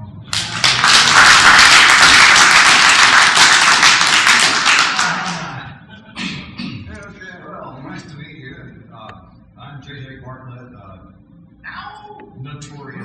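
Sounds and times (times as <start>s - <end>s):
crowd applauding: 0.3s - 5.7s.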